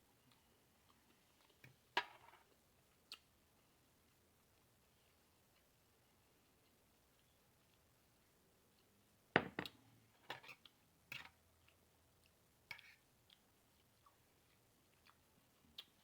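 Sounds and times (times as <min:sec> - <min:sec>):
wet chewing smacks and clicks: 0:11.6 - 0:16.0.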